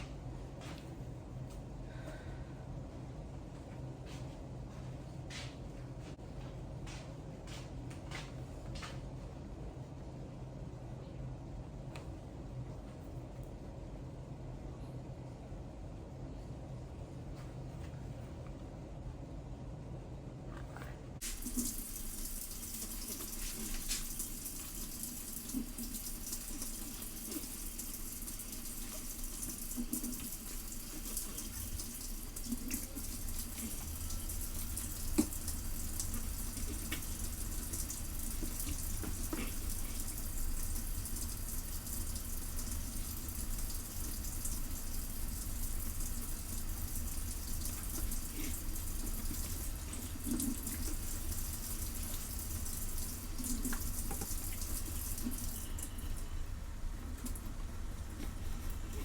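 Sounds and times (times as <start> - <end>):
water running from a tap: 21.2 - 59.0.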